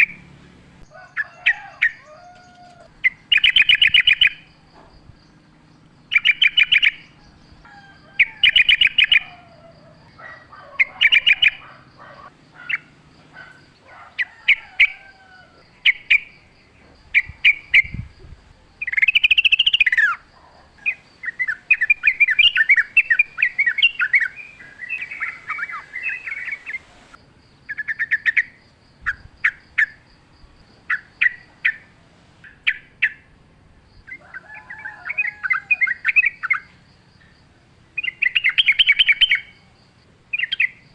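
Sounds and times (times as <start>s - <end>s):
bird singing bubbling phrases: 3.0s - 7.4s, 8.2s - 9.5s, 10.1s - 11.7s, 15.8s - 28.5s.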